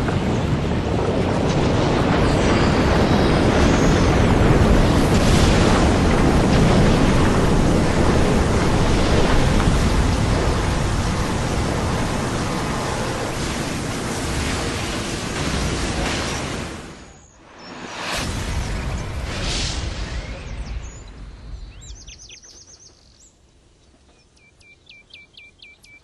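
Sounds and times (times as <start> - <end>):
loud dense monster rumbling: 1.4 - 16.9.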